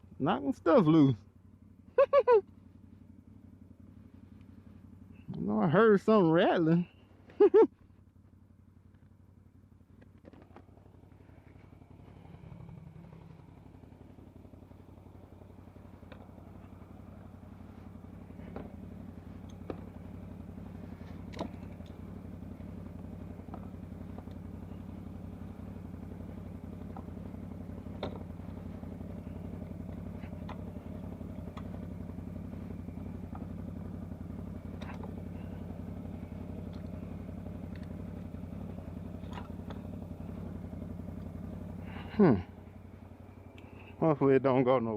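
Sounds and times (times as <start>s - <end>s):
atv engine running: 0.0s - 44.9s
sharp clicks and knocks: 21.3s - 22.0s.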